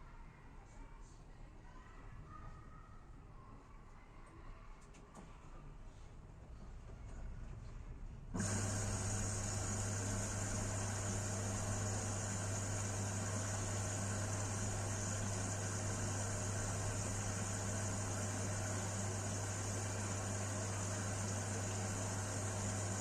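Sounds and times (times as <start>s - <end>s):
washing machine humming: 7.0s - 23.0s.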